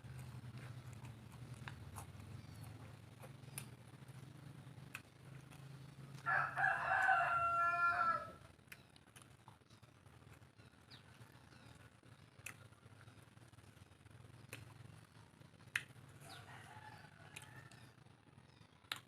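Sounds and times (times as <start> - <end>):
rooster crowing: 6.2 - 8.4, 16.2 - 18.0.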